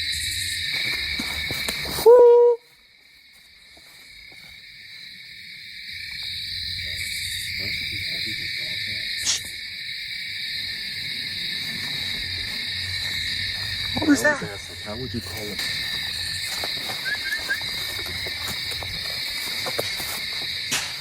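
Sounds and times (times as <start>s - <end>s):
insects droning: 0.0s - 21.0s
sharp click: 9.2s - 9.5s.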